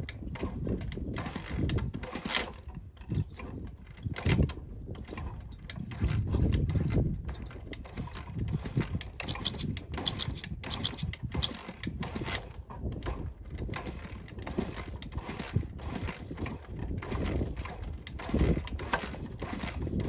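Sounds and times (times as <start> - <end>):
mechanical clicking and clunking: 9.0 - 12.4.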